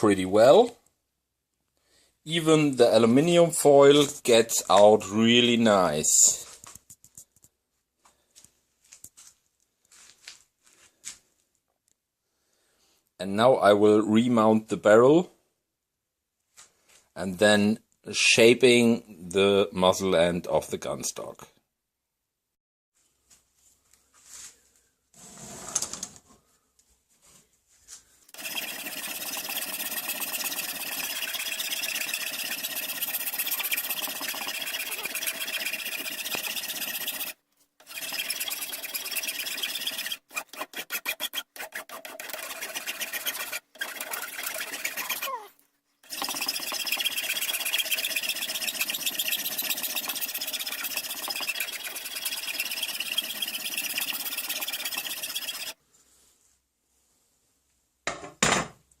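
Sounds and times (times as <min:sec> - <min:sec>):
power sander grinding: 0:28.4 - 0:45.4, 0:46.0 - 0:55.8.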